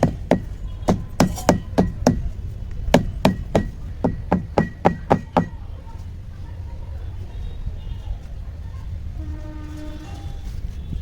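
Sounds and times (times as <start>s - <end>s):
pestle knocking crushing ginger: 0.0s - 5.6s.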